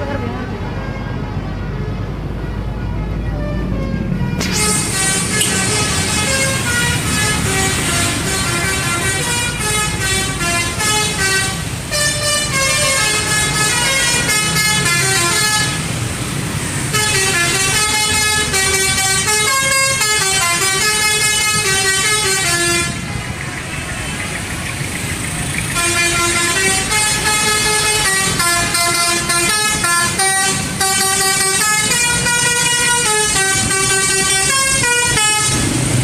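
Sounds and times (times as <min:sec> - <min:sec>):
bus engine running: 0:00.0 - 0:36.0
musical air horn melody: 0:03.5 - 0:15.9, 0:25.8 - 0:35.7.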